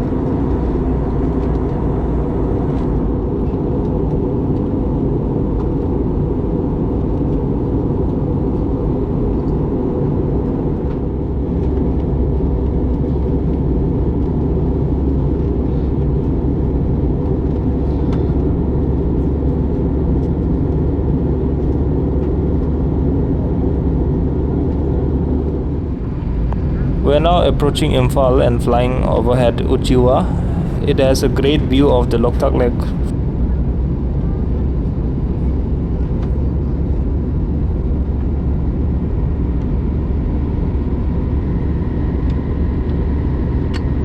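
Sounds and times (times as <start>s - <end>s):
engine drone and rushing air: 0.0s - 43.6s.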